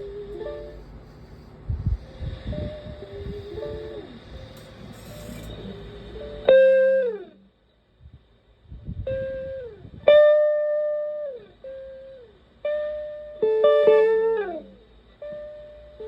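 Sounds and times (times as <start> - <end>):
electric guitar notes with echo: 9.0 - 16.0.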